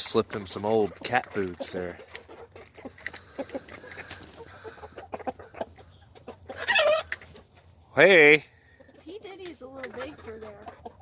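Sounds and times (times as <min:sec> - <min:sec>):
chickens clucking softly: 0:00.0 - 0:08.0, 0:08.7 - 0:11.0
pecking ticks: 0:00.3 - 0:06.4, 0:09.2 - 0:10.6.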